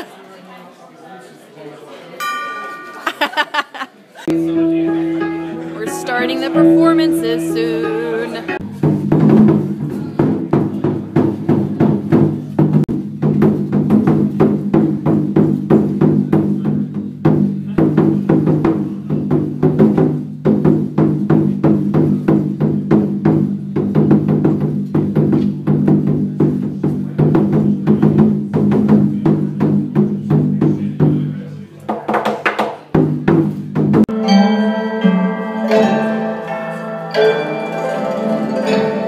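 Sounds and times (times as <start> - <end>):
large drum beaten rapidly: 8.5 - 31.3, 33.0 - 34.1.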